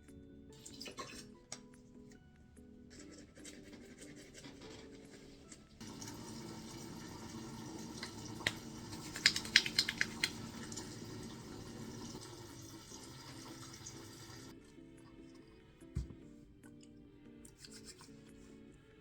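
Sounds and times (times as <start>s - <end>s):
running water rushing: 5.8s - 14.5s.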